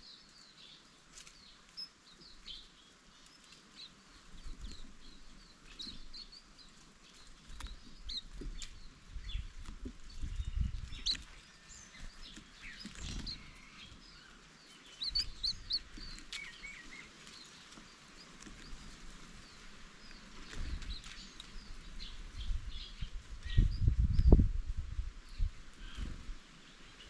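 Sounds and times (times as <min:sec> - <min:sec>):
birds chirping and twittering: 0:00.0 - 0:27.0.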